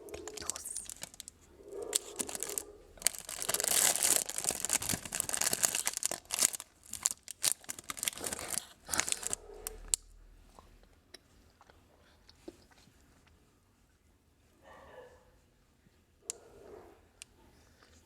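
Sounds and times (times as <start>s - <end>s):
plastic wrapper tearing and crinkling: 0.1s - 9.8s.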